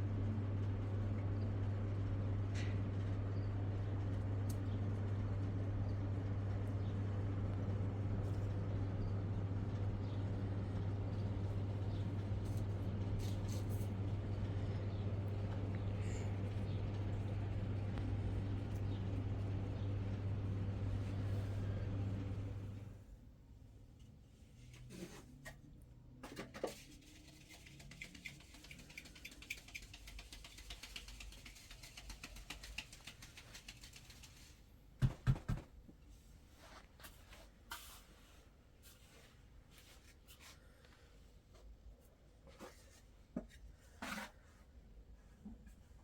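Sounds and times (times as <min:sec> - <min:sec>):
fine rapid ticking: 0:27.8 - 0:34.4.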